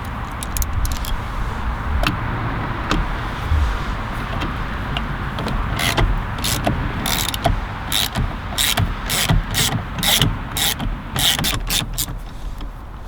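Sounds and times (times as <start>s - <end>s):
ratchet driver clicking: 0.0s - 1.2s, 5.8s - 12.2s.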